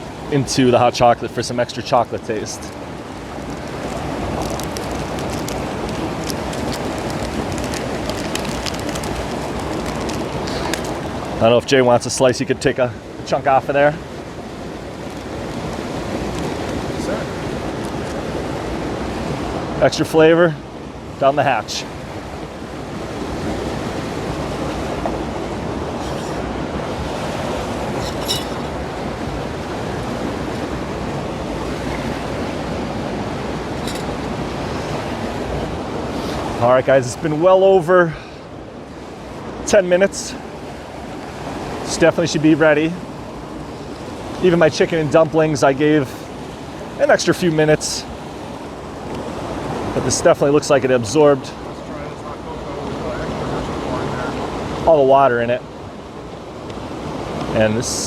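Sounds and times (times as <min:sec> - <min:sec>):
waterfall rushing: 0:00.0 - 0:12.0, 0:23.4 - 0:38.4.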